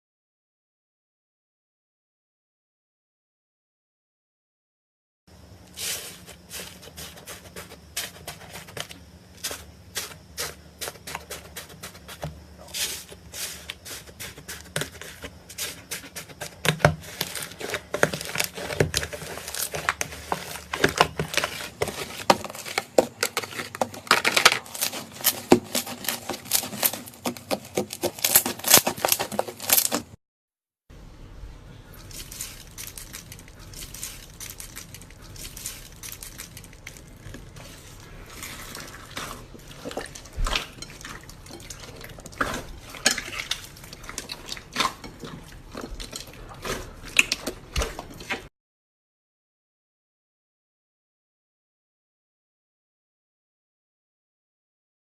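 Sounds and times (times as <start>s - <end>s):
slime crackling and popping: 17.1s - 30.1s.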